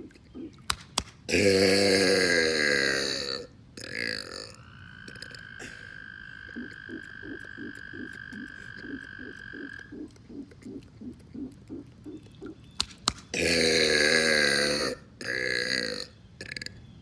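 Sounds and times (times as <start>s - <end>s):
sharp clicks: 0.5s - 1.2s, 7.0s - 13.3s
man burping: 1.3s - 4.6s, 13.3s - 16.8s
low pulses: 4.5s - 12.6s.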